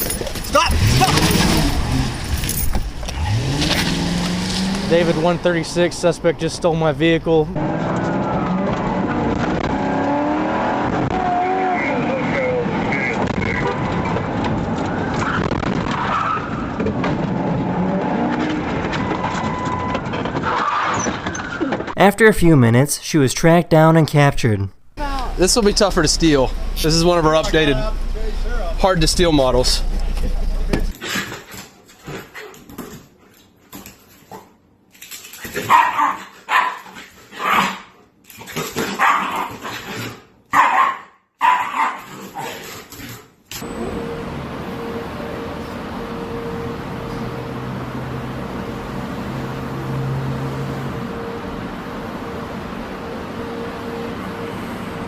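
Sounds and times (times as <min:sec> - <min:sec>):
car engine running: 0:00.0 - 0:15.1, 0:25.0 - 0:30.9, 0:43.6 - 0:55.0
tyres skidding on road: 0:00.0 - 0:22.0
dog barking: 0:35.6 - 0:37.9, 0:38.9 - 0:39.6, 0:40.5 - 0:42.5.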